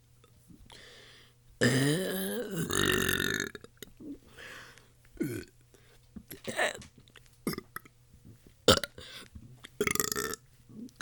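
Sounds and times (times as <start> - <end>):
person burping: 1.6 - 4.2, 5.2 - 5.5, 6.3 - 6.9, 7.5 - 7.9, 8.7 - 9.0, 9.8 - 11.0.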